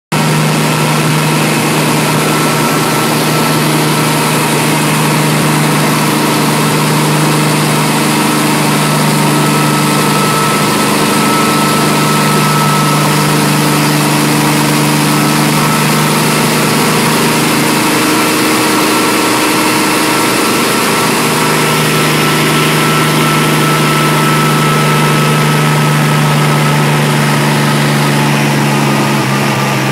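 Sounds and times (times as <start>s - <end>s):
helicopter engine and rotors droning: 0.2s - 29.9s.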